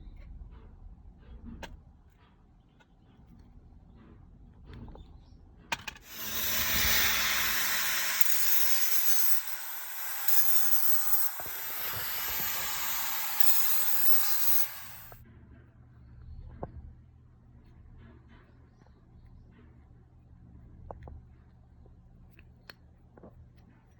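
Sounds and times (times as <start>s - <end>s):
pressurised spray jet hissing: 6.1s - 15.2s.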